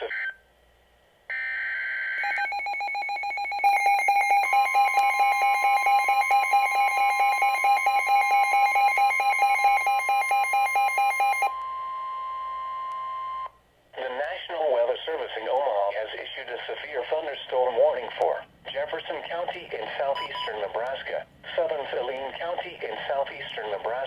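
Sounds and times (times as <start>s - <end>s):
loud alarm-like attention tone: 2.2s - 11.6s.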